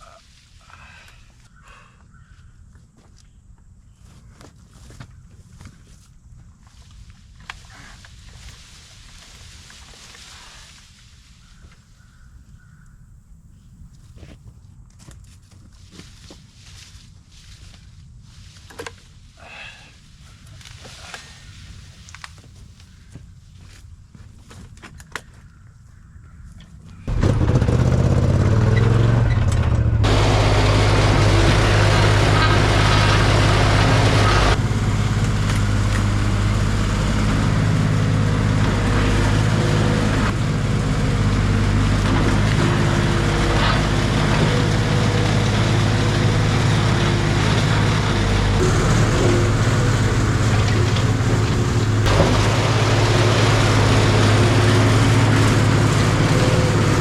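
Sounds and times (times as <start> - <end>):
engine running steadily: 27.0 - 57.0.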